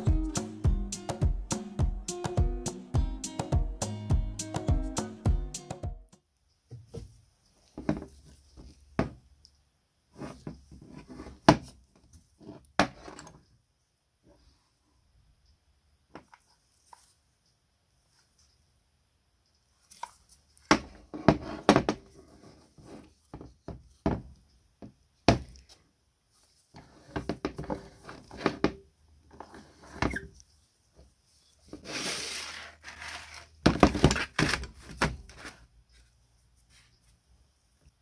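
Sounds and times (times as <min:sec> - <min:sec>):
short scraping rub: 0:31.7 - 0:33.6.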